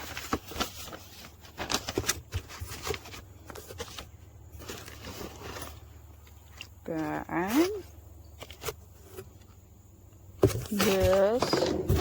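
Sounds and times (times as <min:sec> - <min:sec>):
cardboard and plastic rustling: 0:00.0 - 0:12.0.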